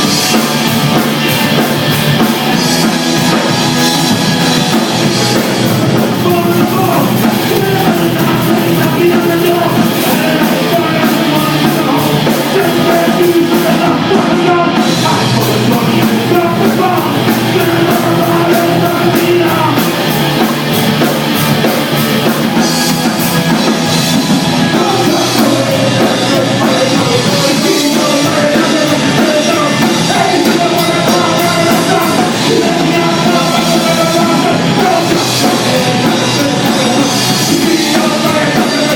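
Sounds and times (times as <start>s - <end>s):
distorted guitars: 0.0s - 38.9s
drum kit: 0.0s - 38.9s
loud fast rock music: 0.0s - 38.9s
shouted vocals: 5.0s - 20.5s, 24.4s - 38.9s.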